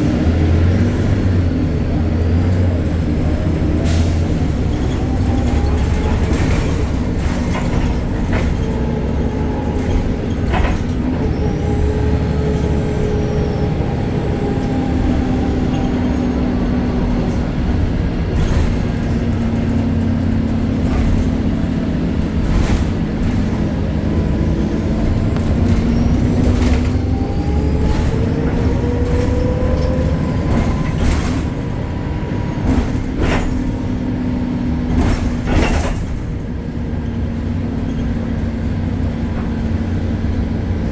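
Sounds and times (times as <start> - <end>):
bus engine running: 0.0 - 40.9
knocks and rattles: 4.8 - 11.2, 32.6 - 36.6.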